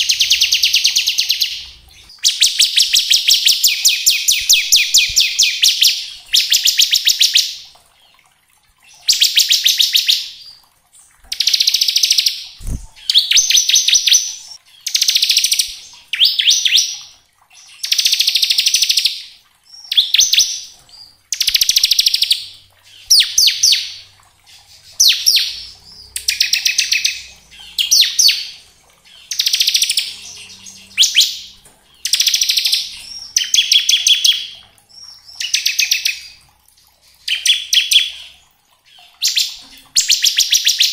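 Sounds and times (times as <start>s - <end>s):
bird singing a rapid rattling trill: 0.0s - 7.5s, 24.9s - 36.4s.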